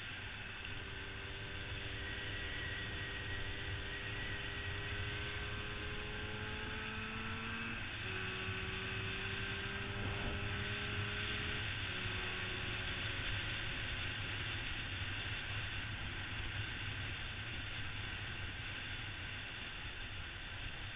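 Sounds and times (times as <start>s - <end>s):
motorcycle engine running: 0.0s - 20.9s.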